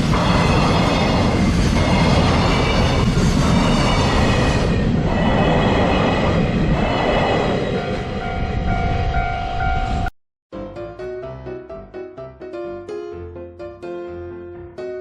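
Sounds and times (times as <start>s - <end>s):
train wagons rumbling: 0.0s - 10.1s.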